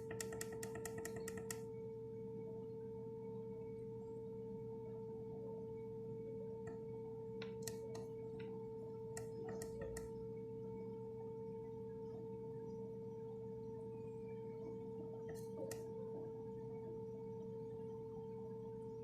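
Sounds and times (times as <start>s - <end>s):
sharp clicks: 0.0s - 1.6s, 7.4s - 8.1s, 9.2s - 10.1s.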